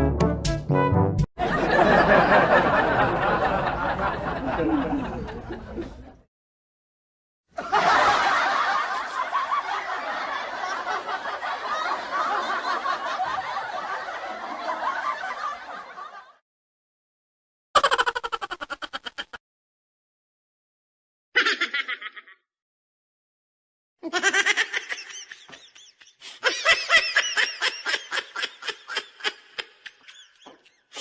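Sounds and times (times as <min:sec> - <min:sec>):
laughter: 0:01.4 - 0:06.3, 0:07.5 - 0:16.4, 0:17.8 - 0:19.4, 0:21.4 - 0:22.4, 0:24.0 - 0:31.0.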